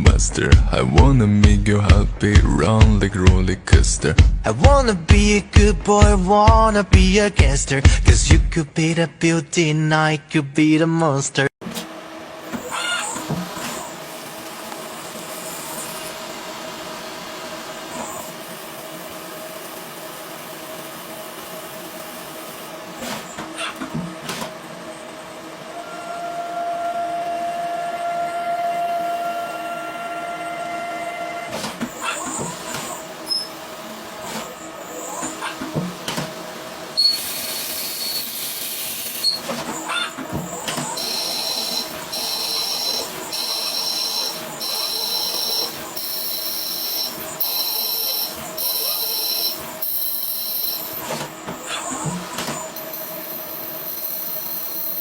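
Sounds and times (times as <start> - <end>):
machine tool whining: 12.3 - 55.0.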